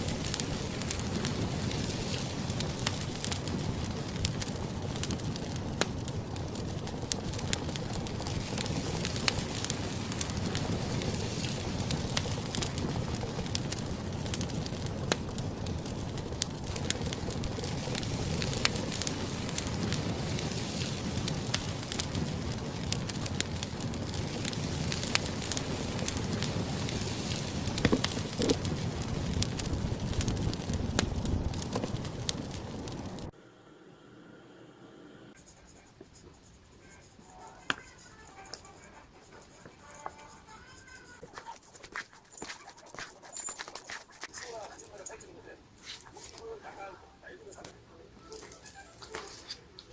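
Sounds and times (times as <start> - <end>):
food sizzling in a frying pan: 0.0 - 33.3.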